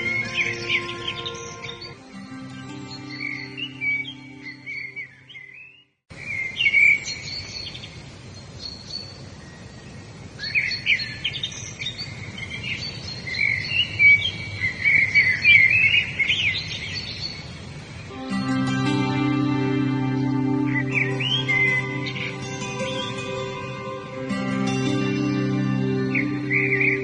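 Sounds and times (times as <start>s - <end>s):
steady background hiss: 0.0s - 5.4s, 6.1s - 27.0s
soft instrumental music: 0.0s - 5.5s, 18.1s - 27.0s
songbirds chirping and trilling: 0.0s - 27.0s.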